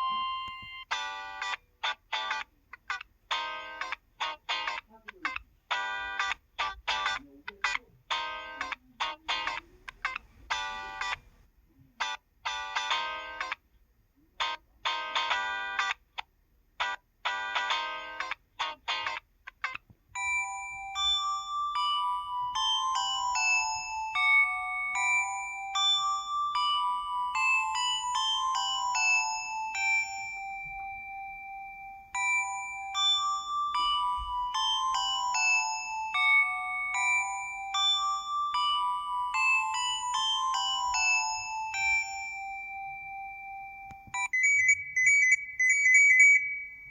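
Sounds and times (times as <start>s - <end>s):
phone ringtone melody: 0.0s - 2.5s, 5.7s - 7.2s, 12.5s - 13.6s, 14.9s - 16.0s, 16.8s - 19.2s, 20.2s - 46.9s.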